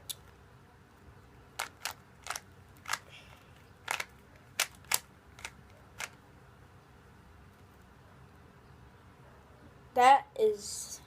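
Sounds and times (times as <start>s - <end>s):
plastic cube layers clacking: 1.6s - 6.2s.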